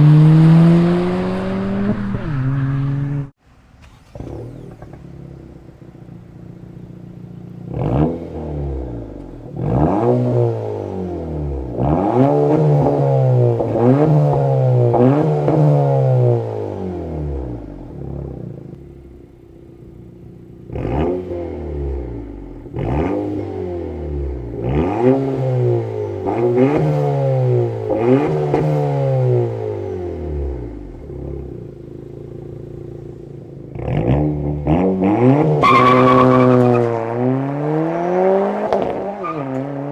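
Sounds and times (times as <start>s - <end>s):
car engine revving: 0.0s - 39.9s
car engine idling: 2.8s - 9.6s, 17.0s - 20.8s, 29.5s - 33.8s.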